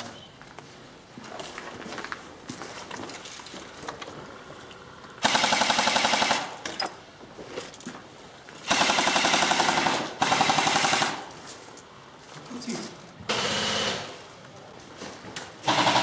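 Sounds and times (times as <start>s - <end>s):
airsoft gun firing full auto: 5.2s - 6.6s, 8.6s - 11.2s, 13.3s - 14.2s, 15.6s - 16.0s.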